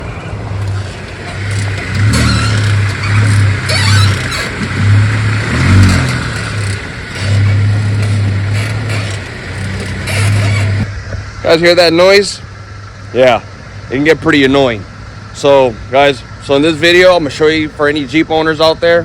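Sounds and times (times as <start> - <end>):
suspension squeaking: 0.0 - 10.9.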